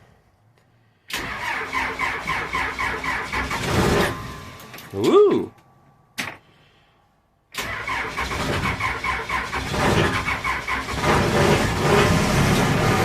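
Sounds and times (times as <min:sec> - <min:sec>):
diesel engine running rough: 0:08.2 - 0:13.0.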